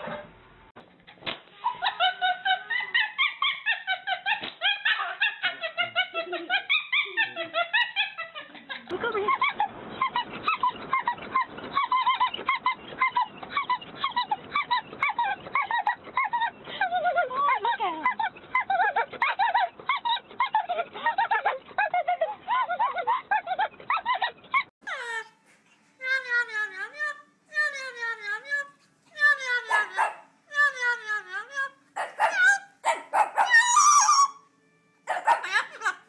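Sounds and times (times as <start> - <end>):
small animals yipping and squeaking: 1.6 - 25.4, 31.6 - 34.4, 35.1 - 36.0.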